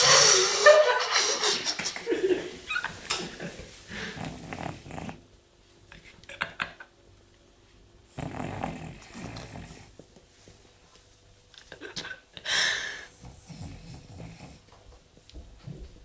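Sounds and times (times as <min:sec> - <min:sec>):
dog snoring: 0:04.0 - 0:05.3, 0:08.1 - 0:10.0, 0:13.1 - 0:14.7.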